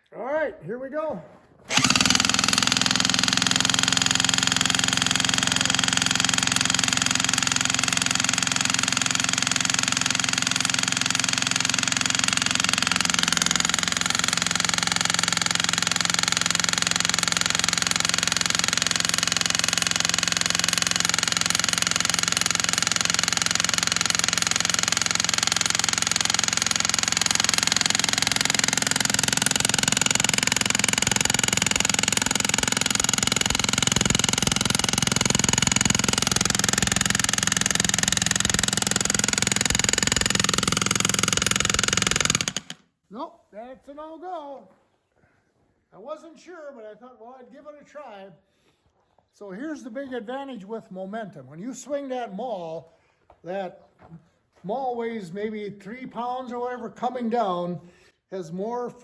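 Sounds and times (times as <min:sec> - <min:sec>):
jackhammer hammering wood: 0:01.7 - 0:42.9.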